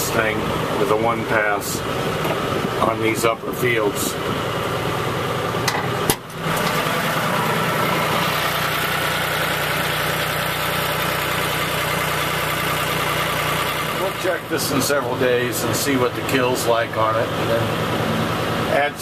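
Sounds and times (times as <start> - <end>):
tractor engine running: 0.0 - 19.0.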